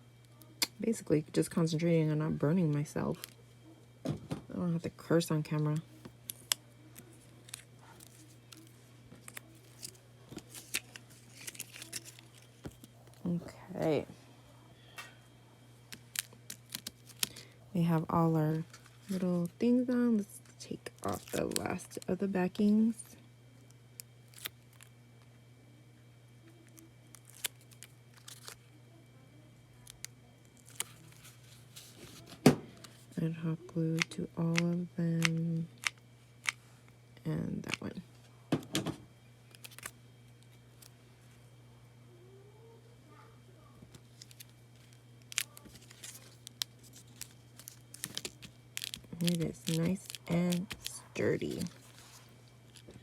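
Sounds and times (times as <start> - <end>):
steady low hum: 0.0 - 53.0
paper and foam pieces rustling: 7.0 - 13.2, 44.1 - 53.0.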